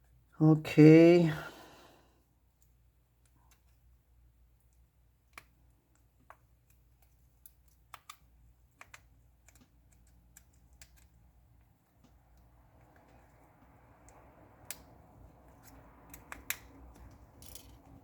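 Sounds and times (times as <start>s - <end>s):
repair tools clicking on phone: 15.5s - 18.0s.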